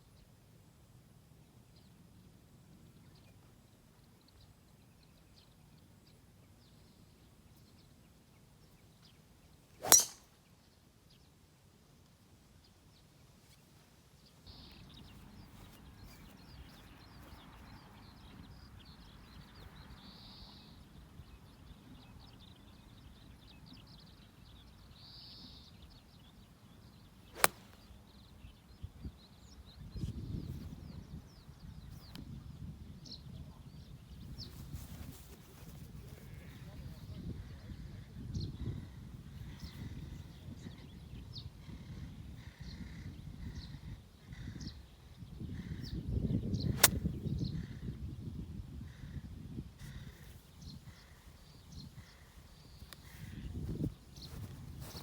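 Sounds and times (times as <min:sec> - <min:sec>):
golf club striking ball: 0:09.8 - 0:10.2, 0:27.4 - 0:27.8, 0:46.8 - 0:47.1.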